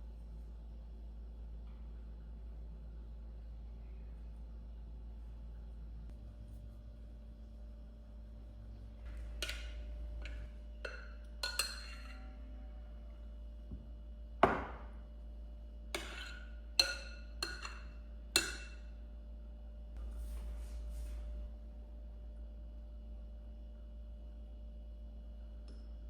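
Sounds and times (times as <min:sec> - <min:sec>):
dishes and utensils clinking: 0:09.1 - 0:12.4, 0:16.0 - 0:18.9.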